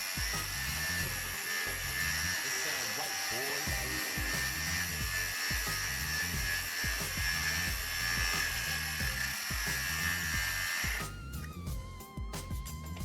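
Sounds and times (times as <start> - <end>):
angle grinder high whine: 0.0 - 11.5
background music with beat: 0.0 - 13.0.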